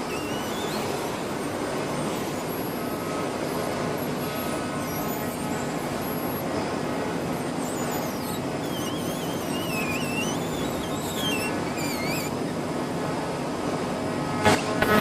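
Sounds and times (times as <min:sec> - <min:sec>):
thin high whistle: 0:00.0 - 0:03.2, 0:07.5 - 0:12.4.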